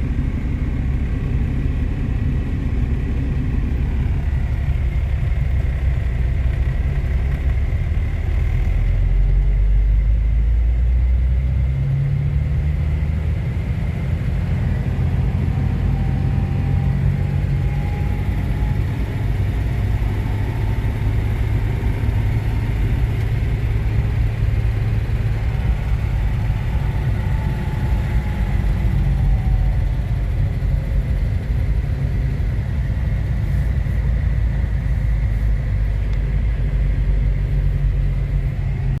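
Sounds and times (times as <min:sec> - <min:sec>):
vehicle engine rumbling: 0:00.0 - 0:39.0.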